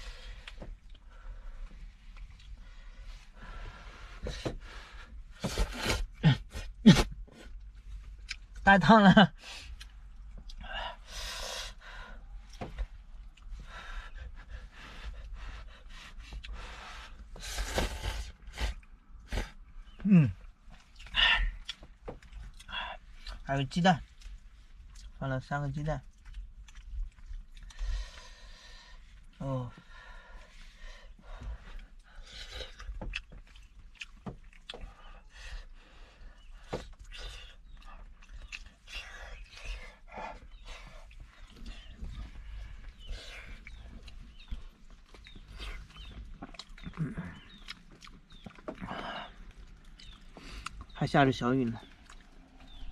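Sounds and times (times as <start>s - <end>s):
small mouth clicks: 45.2s - 48.6s, 49.8s - 50.9s.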